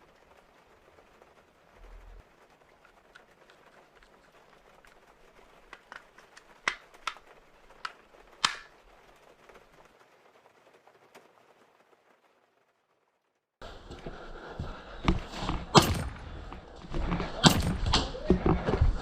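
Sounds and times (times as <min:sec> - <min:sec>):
airsoft gun shots: 0:15.6 - 0:16.2, 0:17.3 - 0:18.2.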